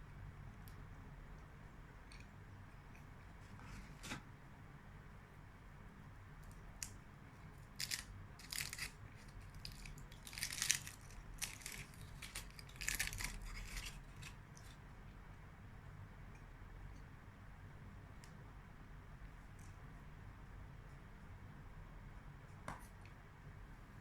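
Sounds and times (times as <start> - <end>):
wrapper crinkling and tearing: 7.8 - 14.4.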